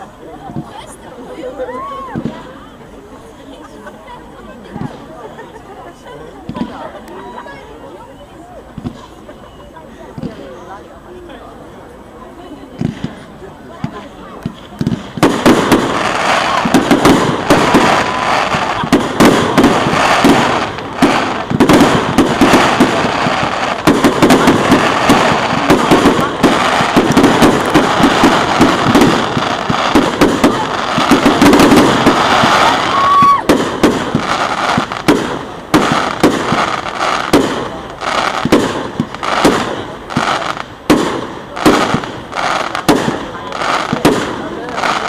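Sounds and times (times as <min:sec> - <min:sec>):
fireworks crackling and bangs: 0:00.0 - 0:45.0
sharp firework bangs: 0:13.8 - 0:45.0
firework whistle: 0:29.9 - 0:34.2.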